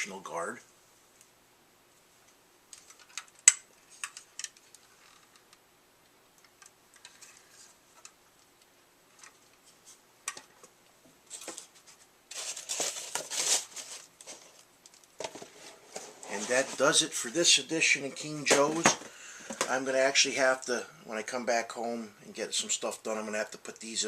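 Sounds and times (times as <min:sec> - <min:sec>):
packaging rustling: 0:11.3 - 0:17.0.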